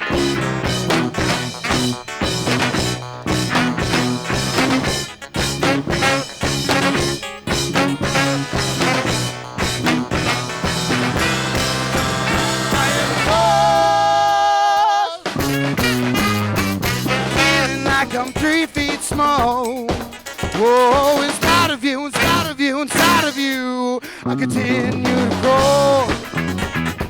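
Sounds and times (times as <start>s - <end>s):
falling bass line: 0.0s - 14.3s, 15.4s - 18.3s, 24.3s - 27.0s
live rock band playing: 0.0s - 14.5s, 15.2s - 27.0s.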